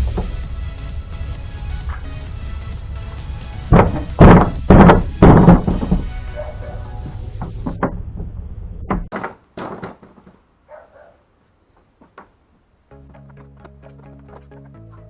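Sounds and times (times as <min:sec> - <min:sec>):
plastic pipe parts knocking: 0:00.0 - 0:00.4, 0:03.6 - 0:06.2
background music: 0:00.0 - 0:07.8, 0:12.9 - 0:15.0.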